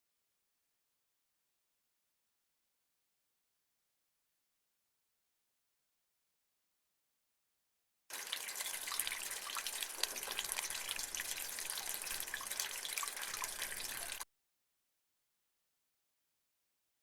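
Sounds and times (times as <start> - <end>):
running splashing water: 8.1 - 14.2
water drips: 8.1 - 14.2.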